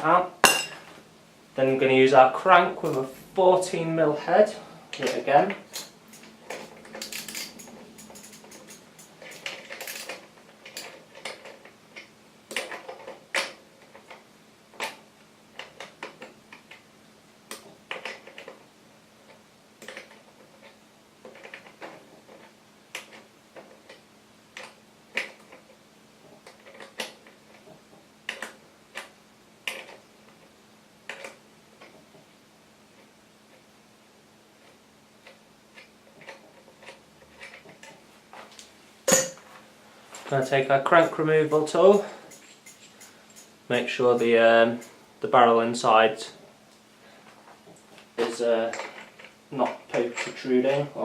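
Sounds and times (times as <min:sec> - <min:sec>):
metal tool clinks: 0:41.9 - 0:43.5
socket ratchet clicking: 0:41.9 - 0:43.6.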